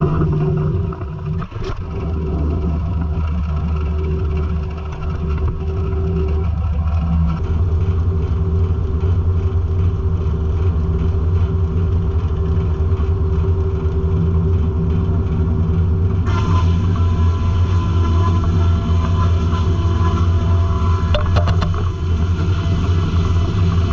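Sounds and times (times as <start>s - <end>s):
low engine drone: 0.0s - 23.9s
spinning saw hum: 0.0s - 23.9s.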